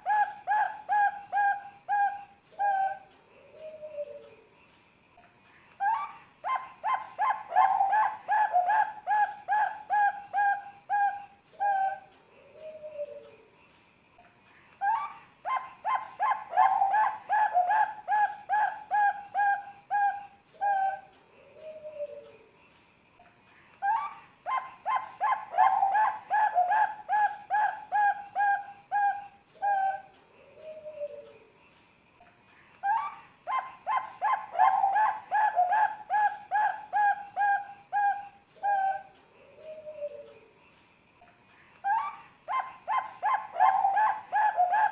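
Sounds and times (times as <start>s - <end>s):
dove cooing: 0.0s - 4.4s, 5.8s - 13.4s, 14.8s - 22.4s, 23.8s - 31.4s, 32.8s - 40.5s, 41.8s - 44.9s
soft low falling coo: 0.0s - 4.6s, 5.8s - 13.6s, 14.8s - 22.5s, 23.8s - 31.6s, 32.8s - 40.6s.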